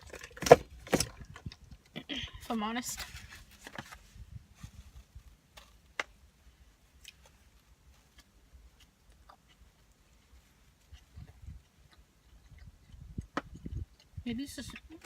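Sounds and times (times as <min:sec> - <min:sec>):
chewing food: 0:07.0 - 0:15.0
sharp mouth clicks: 0:11.2 - 0:14.2.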